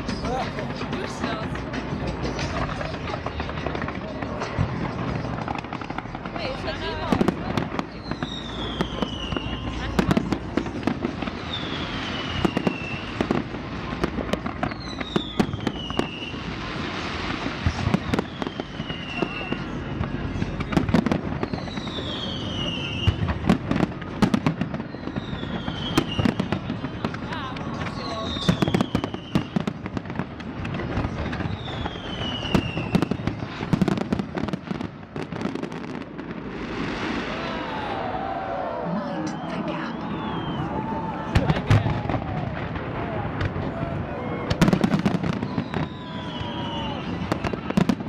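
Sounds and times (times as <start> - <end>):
firecrackers banging and popping: 0.0 - 48.0
falling firework whistles: 7.9 - 9.8, 11.3 - 13.5, 14.6 - 19.9, 21.4 - 23.4, 24.7 - 27.1, 27.8 - 29.8, 31.3 - 34.0, 36.7 - 42.8, 44.2 - 48.0.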